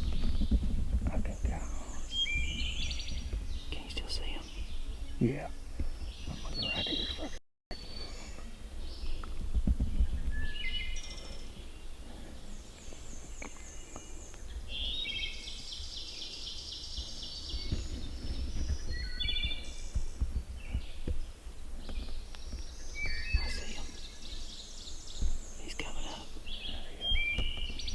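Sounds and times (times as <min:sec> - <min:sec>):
rumbling bumps on microphone: 0:00.0 - 0:07.3, 0:09.0 - 0:11.3, 0:17.0 - 0:27.9
songbirds chirping and trilling: 0:00.0 - 0:27.9.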